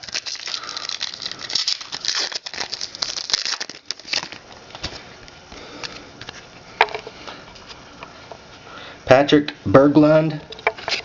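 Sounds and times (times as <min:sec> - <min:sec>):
foil wrapper crinkling: 0:00.0 - 0:05.2.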